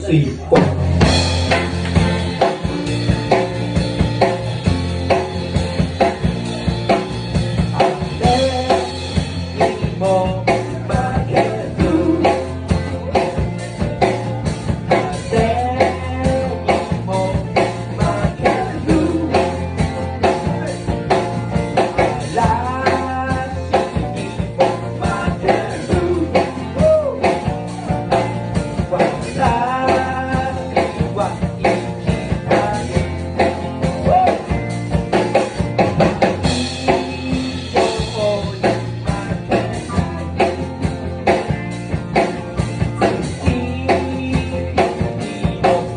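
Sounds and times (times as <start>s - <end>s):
electric guitar: 0.0s - 45.9s
drum kit beat: 0.1s - 45.9s
person singing: 7.6s - 21.1s, 21.7s - 34.7s, 36.5s - 45.9s.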